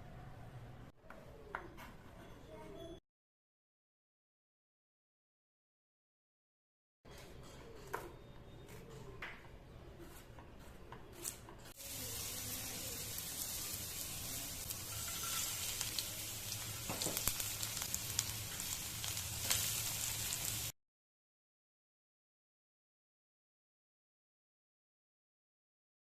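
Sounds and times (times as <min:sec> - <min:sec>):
rice sizzling in a pan: 0:11.8 - 0:20.8.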